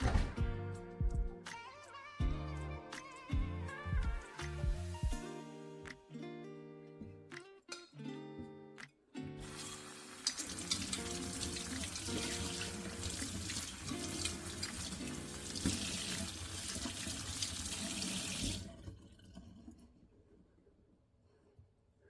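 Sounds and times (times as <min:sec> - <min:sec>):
tap water running into sink: 0:09.4 - 0:20.0.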